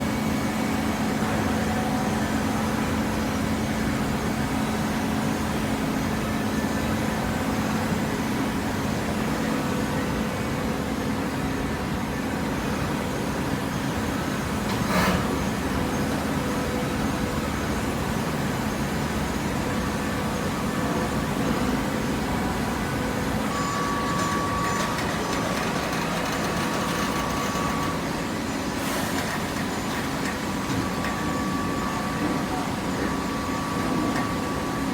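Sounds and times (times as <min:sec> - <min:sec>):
hydraulic machine hum: 0:13.8 - 0:34.9.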